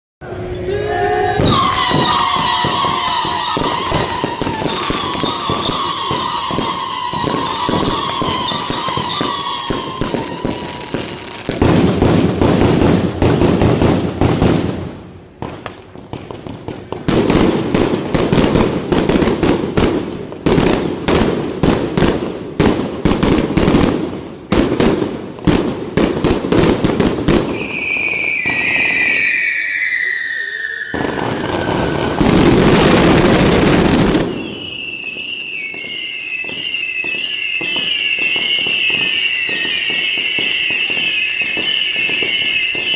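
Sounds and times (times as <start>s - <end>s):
whistling fireworks: 0.2s - 42.9s
warbling whistles: 0.5s - 11.0s, 27.5s - 32.2s, 34.2s - 42.9s
fireworks cracking and banging: 1.3s - 42.9s.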